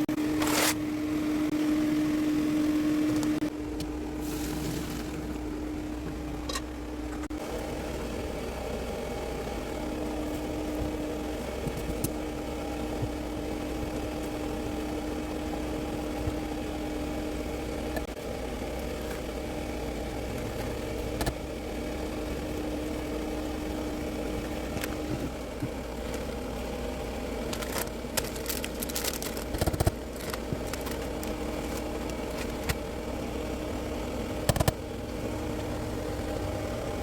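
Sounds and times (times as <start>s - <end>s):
steady machine hum: 0.0s - 37.0s.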